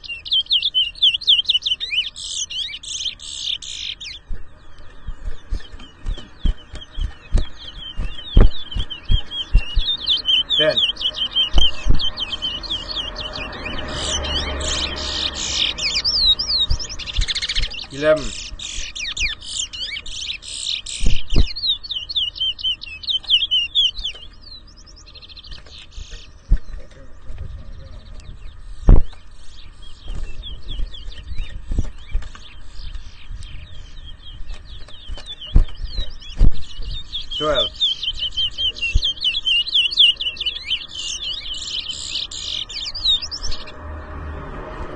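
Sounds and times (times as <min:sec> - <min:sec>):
finches singing whistled notes: 0:00.0 - 0:43.8
low thumps: 0:04.2 - 0:10.2, 0:11.5 - 0:12.4, 0:16.1 - 0:18.6, 0:26.5 - 0:29.3
loud low thump: 0:07.4 - 0:09.9.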